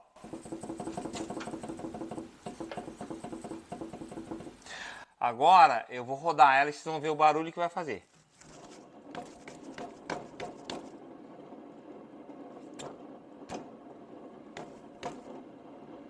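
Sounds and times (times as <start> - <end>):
wheel bearing rumbling: 0.0 - 5.0, 8.2 - 16.0.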